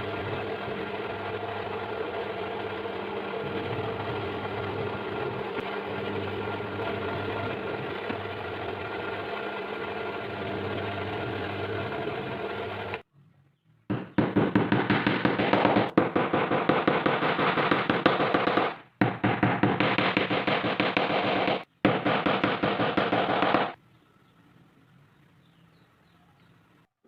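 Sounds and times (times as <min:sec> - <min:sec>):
power tool motor running: 0:00.0 - 0:13.0
rapid repeated knocking rattle: 0:13.9 - 0:23.8.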